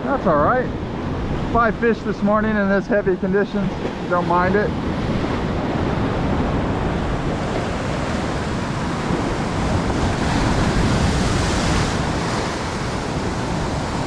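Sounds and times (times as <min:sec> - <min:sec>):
wind buffeting microphone: 0:00.0 - 0:14.0
surf breaking on beach: 0:03.3 - 0:14.0.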